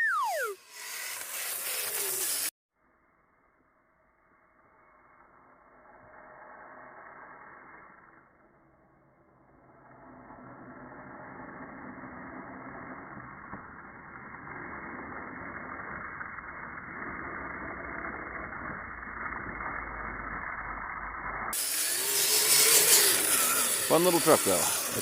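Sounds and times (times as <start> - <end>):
electric motor whirring: 0.0 - 2.5, 12.4 - 25.0.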